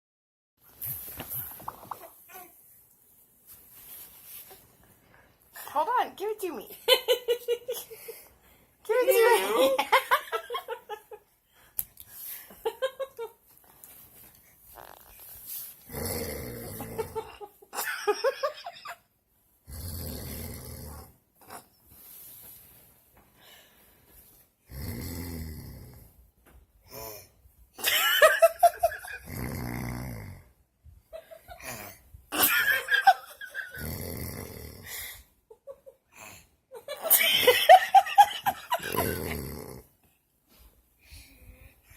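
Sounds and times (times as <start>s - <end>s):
snoring: 15.9s - 17.3s, 19.7s - 21.7s, 24.7s - 26.2s, 29.2s - 30.6s, 33.7s - 35.0s, 38.8s - 39.9s.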